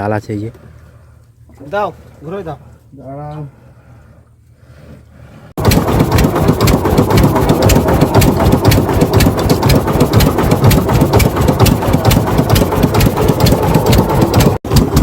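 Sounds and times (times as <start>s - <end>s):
boat engine running: 5.6s - 15.0s
rapid clicking: 5.6s - 15.0s.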